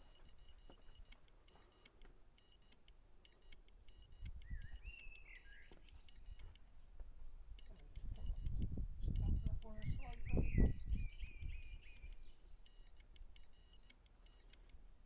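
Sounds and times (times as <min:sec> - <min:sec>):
faint handling clicks: 0:00.0 - 0:10.3, 0:11.3 - 0:14.8
bird whistle: 0:04.4 - 0:06.3, 0:10.1 - 0:12.4.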